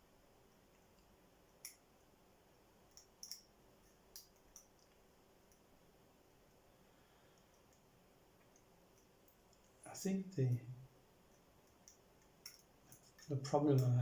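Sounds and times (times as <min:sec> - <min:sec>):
metallic clicks of lock picking: 0:02.9 - 0:05.0, 0:11.6 - 0:13.9.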